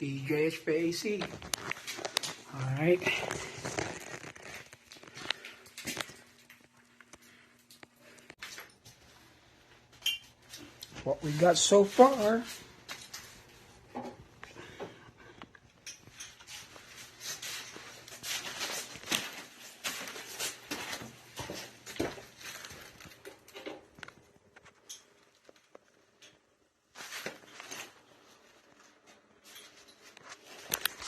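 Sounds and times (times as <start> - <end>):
scuffing and rustling: 16.6 - 23.1.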